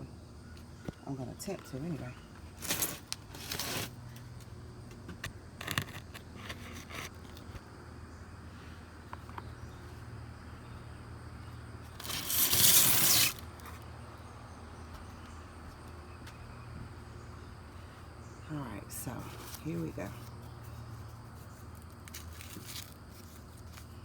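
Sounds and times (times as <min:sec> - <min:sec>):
corn husks rustling and tearing: 0:01.4 - 0:04.5, 0:05.5 - 0:07.6, 0:11.9 - 0:13.9, 0:19.0 - 0:24.0.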